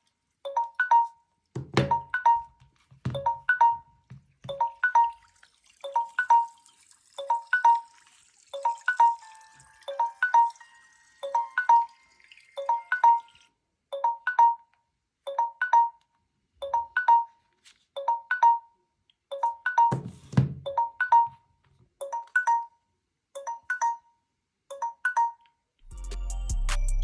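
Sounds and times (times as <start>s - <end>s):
phone alarm tone ringing: 8.6s - 13.4s.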